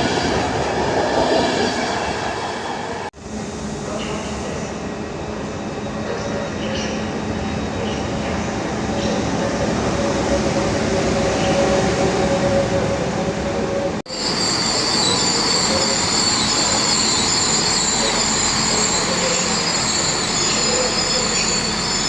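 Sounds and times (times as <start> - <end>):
train running: 0.0 - 22.0
train wheels squealing: 14.1 - 22.0.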